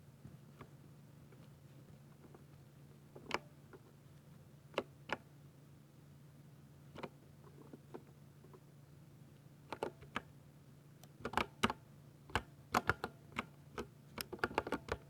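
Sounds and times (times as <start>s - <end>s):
mechanical keyboard keystrokes: 11.1s - 15.0s.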